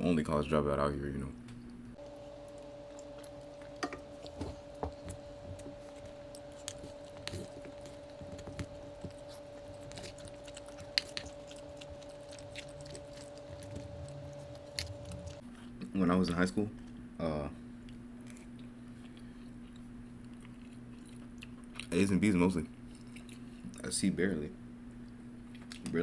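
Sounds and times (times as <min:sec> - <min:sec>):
faint steady hum: 0:00.3 - 0:15.7
person chewing: 0:02.0 - 0:15.4.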